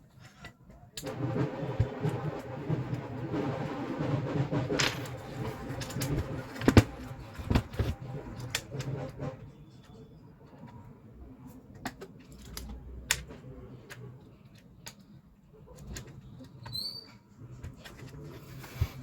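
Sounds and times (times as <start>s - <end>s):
clicks and knocks of handling: 11.7s - 16.8s.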